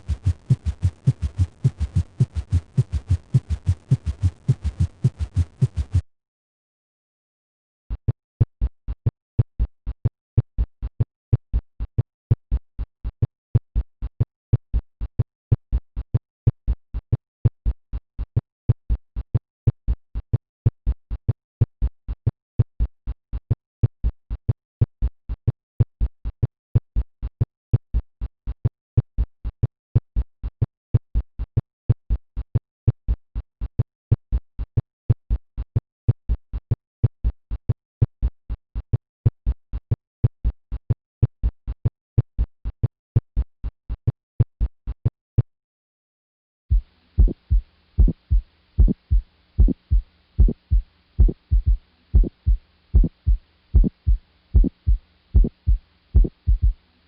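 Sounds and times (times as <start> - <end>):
heartbeat thumps: 0.0 - 6.0, 46.7 - 56.8.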